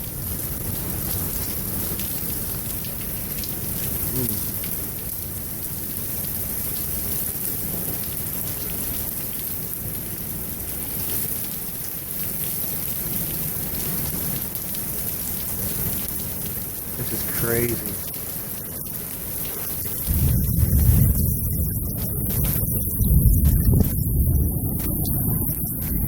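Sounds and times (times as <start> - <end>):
heavy rain pattering on hard surfaces: 0.0 - 26.0
low rumble of thunder: 19.9 - 26.0.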